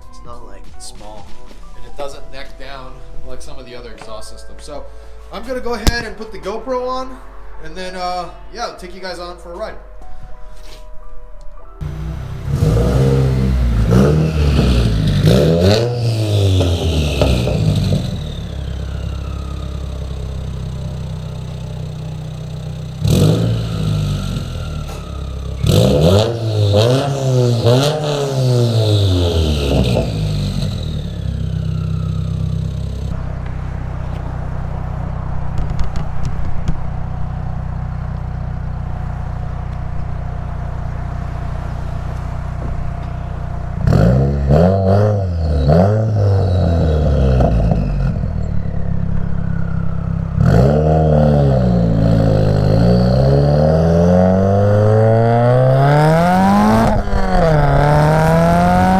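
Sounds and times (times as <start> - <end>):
car engine revving: 11.8 - 39.5, 40.4 - 58.9
car engine idling: 11.8 - 44.1, 47.2 - 50.8, 55.8 - 58.9.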